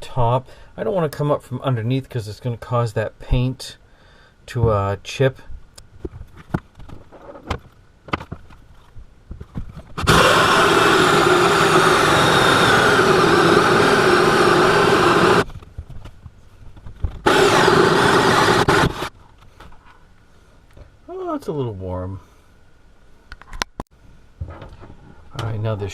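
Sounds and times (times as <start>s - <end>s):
power drill cutting countertop: 10.0s - 15.4s, 17.3s - 19.1s.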